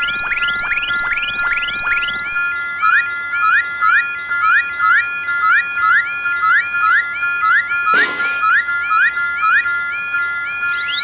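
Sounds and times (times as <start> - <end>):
railroad crossing alarm ringing: 6.8 - 11.0.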